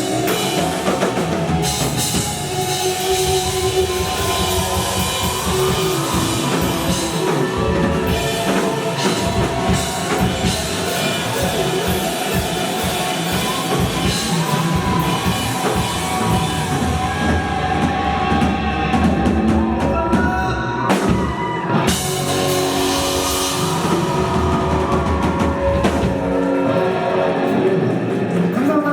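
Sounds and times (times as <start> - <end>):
rock band playing live: 0.0 - 28.9.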